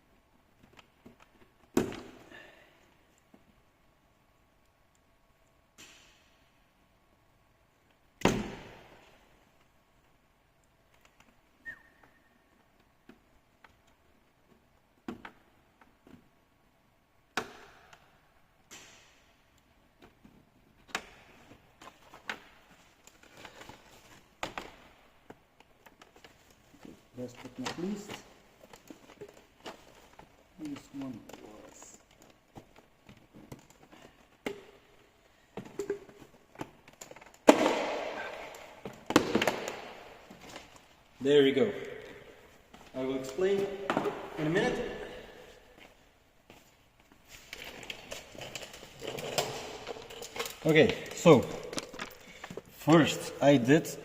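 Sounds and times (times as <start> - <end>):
brief squeak: 11.6 - 12.3.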